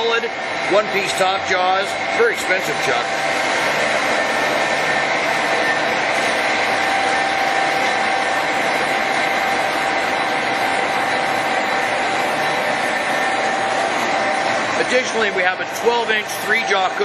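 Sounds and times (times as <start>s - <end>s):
lathe running with even whir: 0.0s - 17.0s
steady whine tones: 0.0s - 17.0s.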